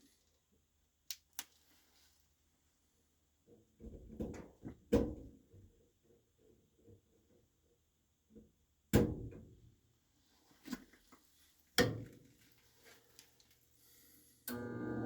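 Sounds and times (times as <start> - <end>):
furnace motor humming and whining: 14.5 - 15.0.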